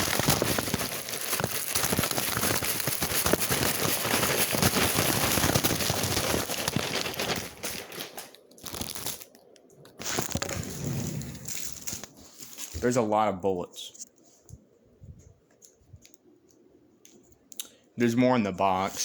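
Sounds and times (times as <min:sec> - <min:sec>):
plastic packets crinkling: 0:00.0 - 0:13.0.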